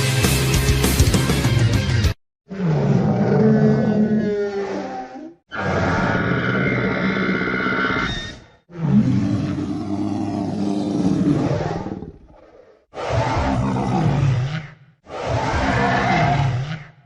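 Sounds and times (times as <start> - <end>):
deep growling roars: 8.7 - 17.0.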